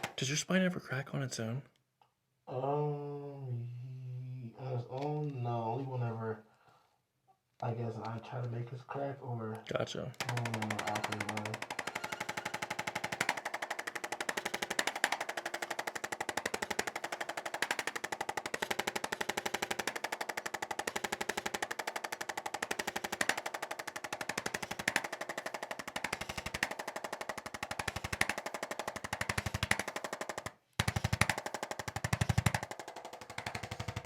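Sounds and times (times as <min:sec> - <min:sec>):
percussion instrument tapping on back: 0:00.0 - 0:00.2, 0:10.2 - 0:30.1, 0:30.8 - 0:34.0.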